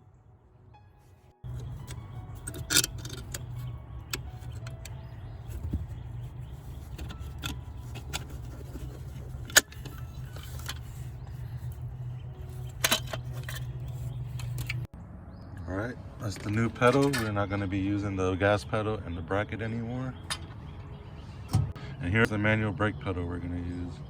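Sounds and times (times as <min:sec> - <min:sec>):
steady low hum: 0:01.4 - 0:18.2.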